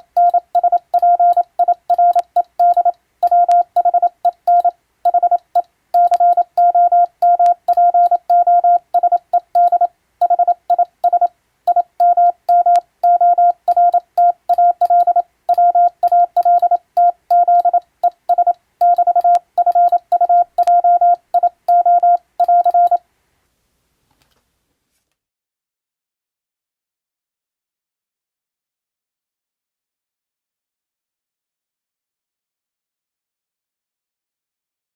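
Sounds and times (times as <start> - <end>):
morse code beeps: 0.0 - 23.0.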